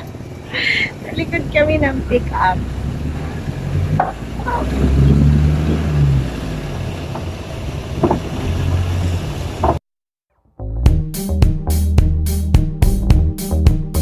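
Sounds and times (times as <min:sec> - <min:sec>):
road noise: 0:00.0 - 0:09.9
truck engine rumble: 0:00.0 - 0:09.9
wind buffeting microphone: 0:00.9 - 0:06.2.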